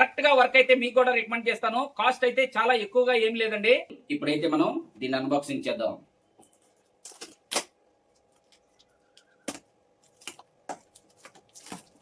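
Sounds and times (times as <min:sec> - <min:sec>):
packaging clicks and rustles: 0:07.0 - 0:12.0.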